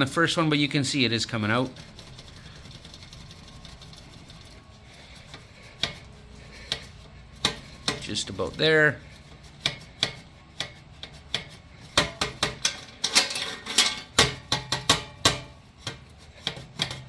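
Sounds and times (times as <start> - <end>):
metal clinks and scraping: 1.5 - 17.0.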